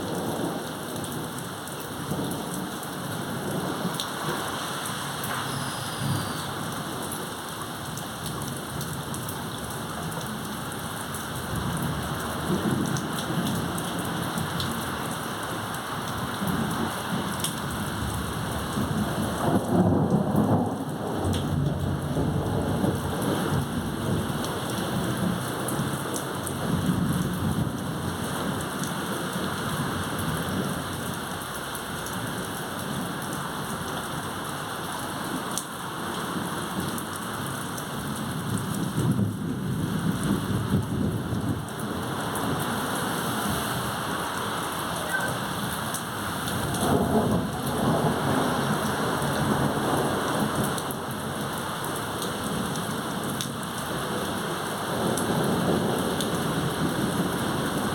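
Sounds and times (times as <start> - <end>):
heavy rain pouring: 0.0 - 57.9
thunder rumbling: 44.8 - 50.7.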